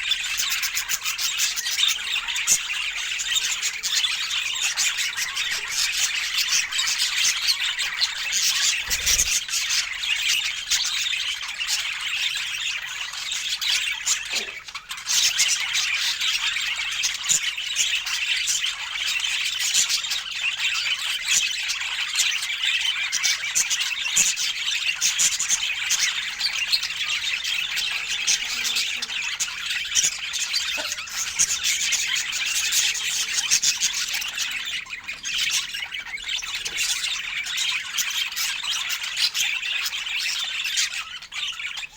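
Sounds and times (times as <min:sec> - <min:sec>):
budgies chattering and squawking: 0:00.0 - 0:41.9.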